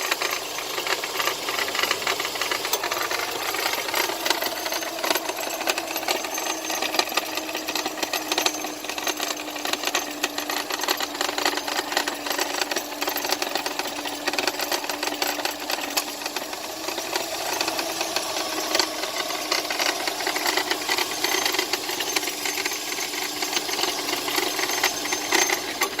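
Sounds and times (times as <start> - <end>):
car engine idling: 0.0 - 26.0
fast metallic rattle: 0.0 - 26.0.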